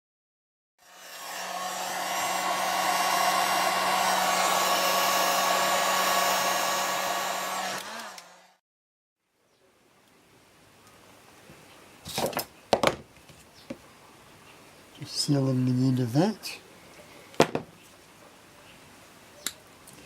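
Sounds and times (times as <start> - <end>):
heat gun blowing: 0.8 - 8.6.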